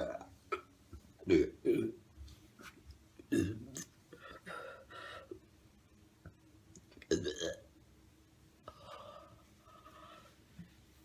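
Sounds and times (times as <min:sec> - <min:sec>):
woman burping: 0:00.0 - 0:02.0, 0:03.3 - 0:04.0, 0:07.1 - 0:07.6.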